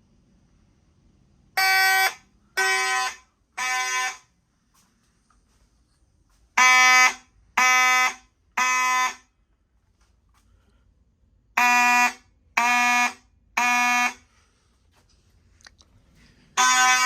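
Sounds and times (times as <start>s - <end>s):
buzzy fire alarm horn blasts: 1.6s - 4.4s, 6.6s - 9.4s, 11.5s - 14.4s, 16.5s - 17.0s.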